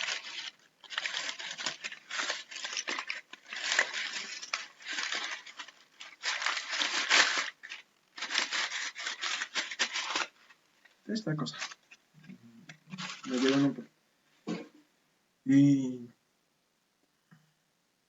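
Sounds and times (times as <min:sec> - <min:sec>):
rough crinkling scraping: 0:00.0 - 0:13.8.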